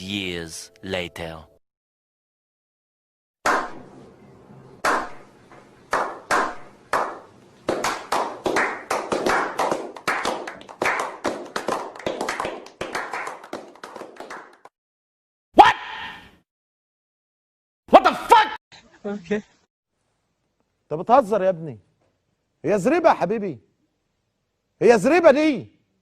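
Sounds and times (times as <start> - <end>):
hand claps with echo: 5.9 - 14.7.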